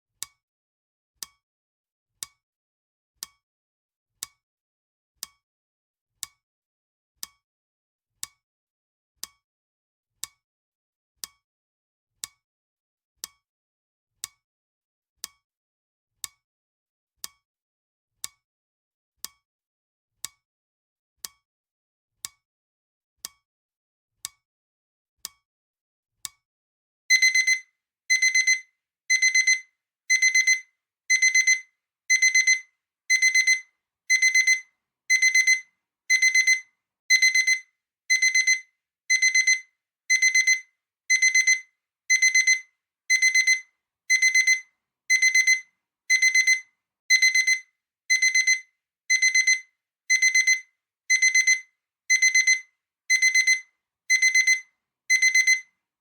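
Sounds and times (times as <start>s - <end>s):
high electronic alarm beeps: 27.1s - 55.6s
timer ticking: 27.1s - 55.6s.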